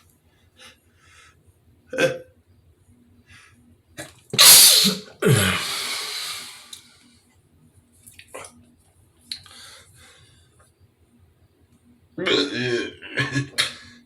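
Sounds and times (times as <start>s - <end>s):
man sneezing: 4.4s - 6.6s.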